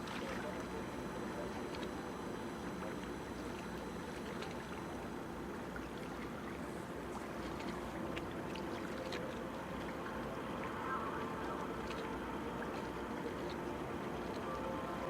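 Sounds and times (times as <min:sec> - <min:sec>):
water: 0:00.0 - 0:15.0.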